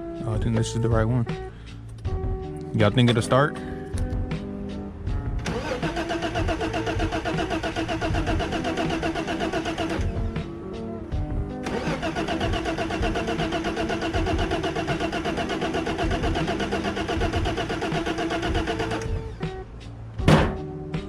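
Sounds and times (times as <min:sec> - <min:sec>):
car engine starter cranking: 0:05.4 - 0:10.2, 0:11.6 - 0:19.4.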